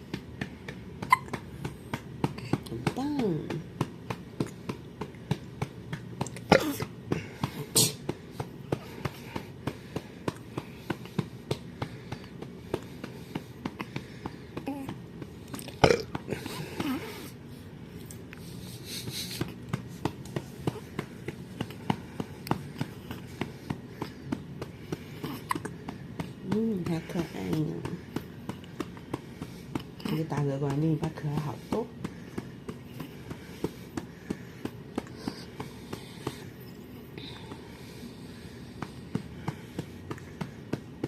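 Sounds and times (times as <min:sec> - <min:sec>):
baby mouth and throat sounds: 0:00.2 - 0:07.0, 0:14.6 - 0:17.4, 0:25.2 - 0:27.8.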